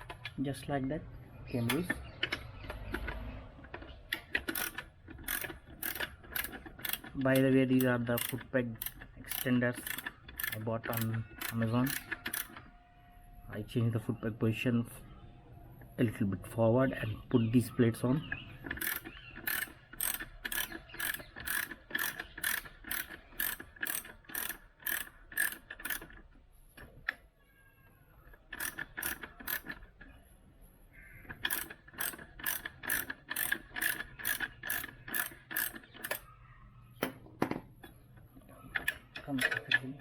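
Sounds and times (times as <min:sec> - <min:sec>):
ratchet wrench clicking: 0:03.8 - 0:12.7, 0:18.7 - 0:26.2, 0:28.5 - 0:29.9, 0:31.3 - 0:36.3.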